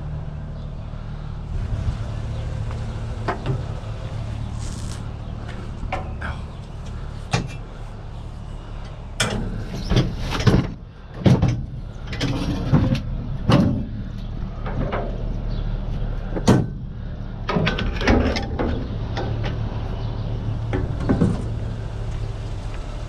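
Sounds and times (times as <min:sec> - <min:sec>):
vehicle engine running: 0:00.0 - 0:23.0.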